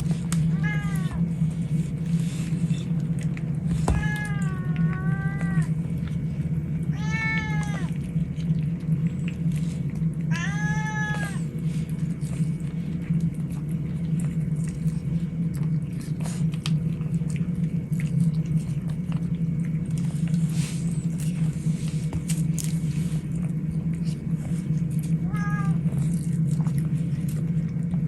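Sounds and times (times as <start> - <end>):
steady low hum: 0.0 - 28.0
cat meowing: 0.5 - 1.2, 3.8 - 5.7, 6.9 - 8.0, 10.3 - 11.4, 25.2 - 25.8.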